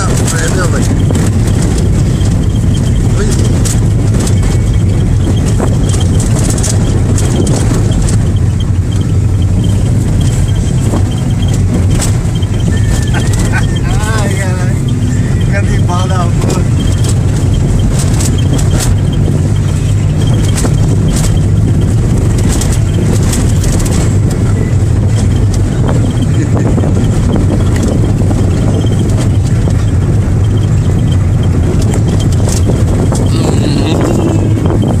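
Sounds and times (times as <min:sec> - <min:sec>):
engine rumbling: 0:00.0 - 0:35.0.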